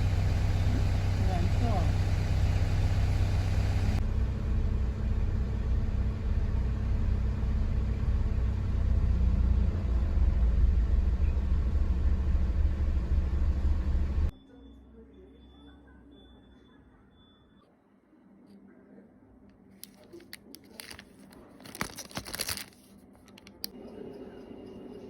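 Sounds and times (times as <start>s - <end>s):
steady low rumble: 0.0s - 14.3s.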